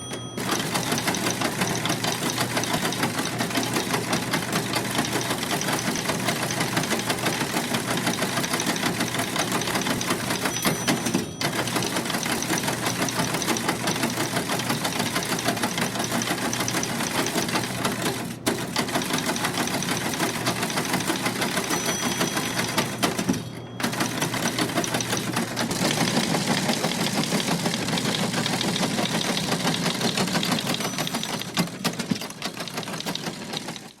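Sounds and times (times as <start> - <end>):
typewriter clattering: 0.0 - 34.0.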